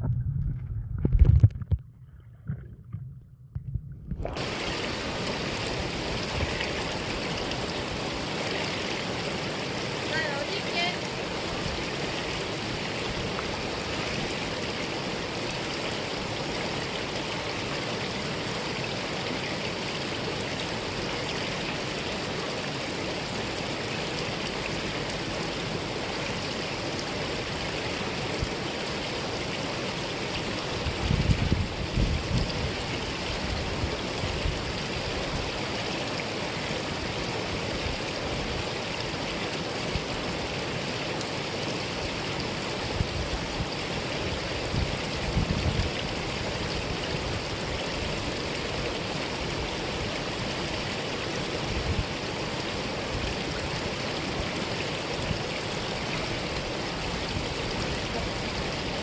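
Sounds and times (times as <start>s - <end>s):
low thumps: 0.0s - 4.4s
stream flowing: 0.0s - 59.0s.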